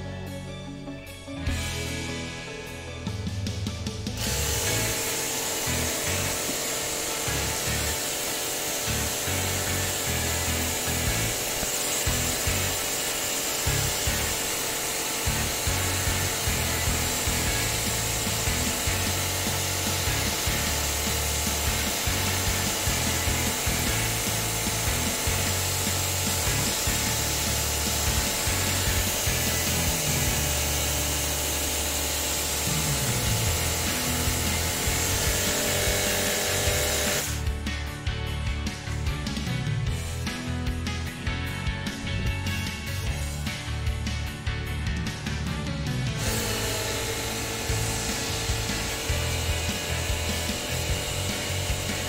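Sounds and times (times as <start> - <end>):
workshop tool humming: 3.2 - 37.7, 46.1 - 52.0.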